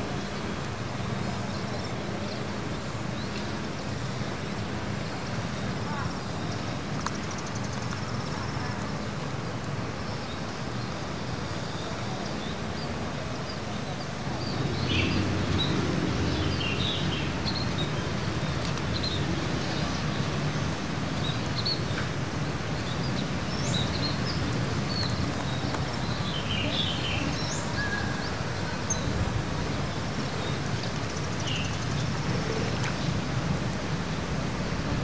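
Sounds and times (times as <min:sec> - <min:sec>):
birds chirping: 0:11.6 - 0:33.3.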